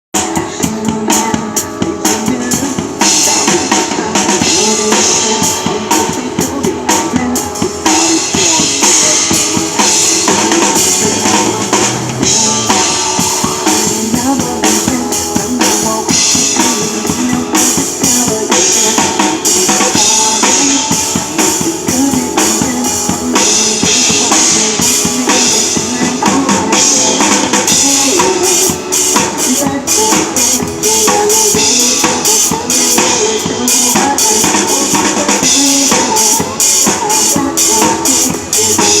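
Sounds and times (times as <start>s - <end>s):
drum kit playing: 0.1s - 39.0s
recorded backing music: 0.2s - 39.0s.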